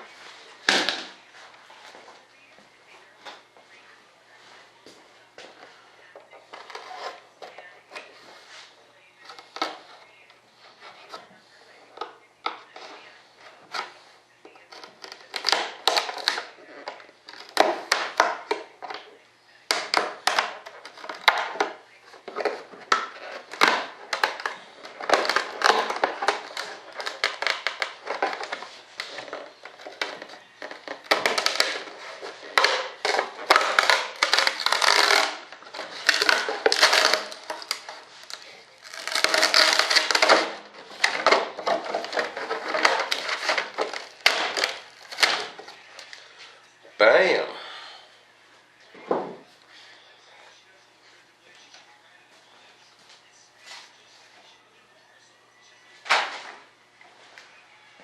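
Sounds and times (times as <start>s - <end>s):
composite part crunching and cracking: 22.9s - 46.1s.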